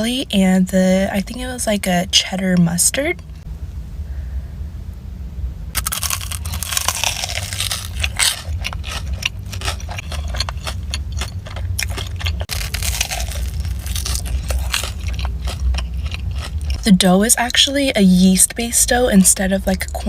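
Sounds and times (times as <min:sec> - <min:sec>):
steady low hum: 0:00.0 - 0:20.0
crunchy food chewing: 0:05.8 - 0:17.6.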